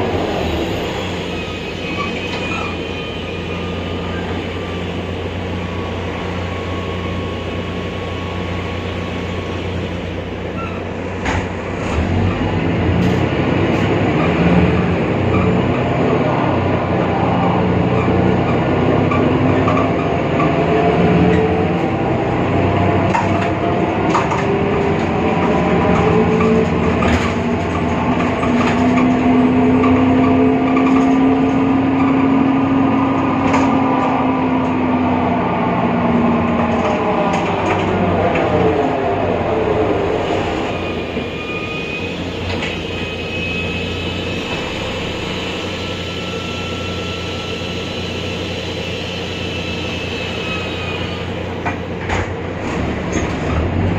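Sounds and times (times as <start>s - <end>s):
bus differential whine: 0.0s - 53.9s.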